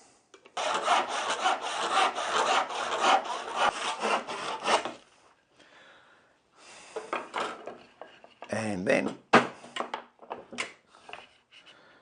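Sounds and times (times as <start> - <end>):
handsaw cutting wood: 0.6 - 5.0.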